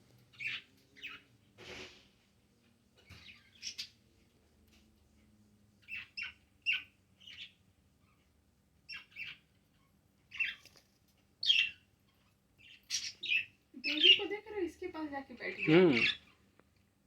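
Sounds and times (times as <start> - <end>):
budgerigars chirping: 0.3 - 1.3, 5.8 - 8.2, 8.9 - 10.6, 11.4 - 14.4, 15.4 - 16.4.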